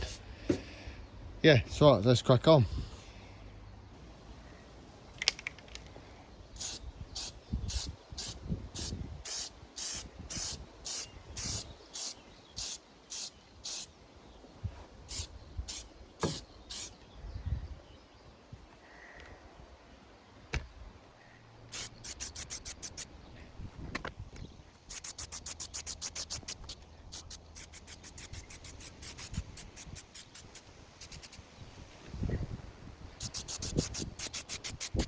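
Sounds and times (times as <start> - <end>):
spray paint can bursts: 6.6 - 13.9, 15.1 - 16.9, 21.7 - 23.1, 24.9 - 31.4, 33.2 - 35.0.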